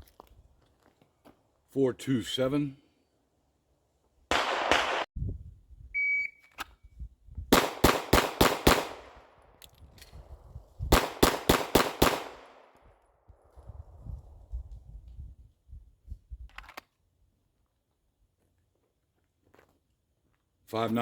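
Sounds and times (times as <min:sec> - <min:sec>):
pistol firing rapid shots: 0:04.3 - 0:05.1, 0:07.5 - 0:09.2, 0:10.9 - 0:12.7
shot timer beep: 0:06.0 - 0:06.5.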